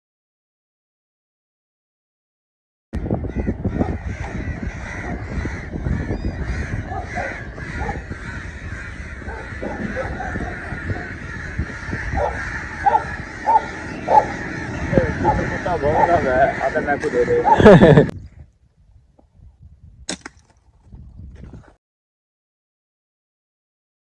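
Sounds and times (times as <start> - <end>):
steady low rumble: 3.0 - 16.6
crows cawing: 3.0 - 18.1.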